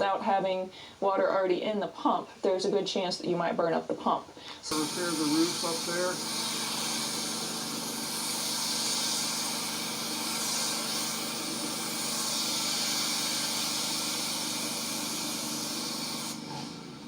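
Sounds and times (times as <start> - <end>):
pressure washer water spraying: 4.7 - 17.0.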